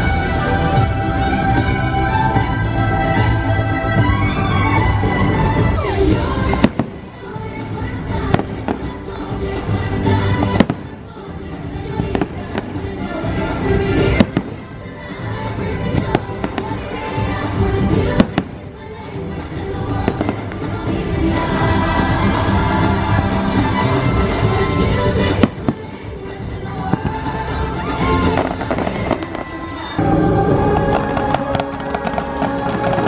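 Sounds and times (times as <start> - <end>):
orchestral music over loudspeakers: 0.0 - 33.0
fireworks bursting with sharp bangs: 4.2 - 30.0.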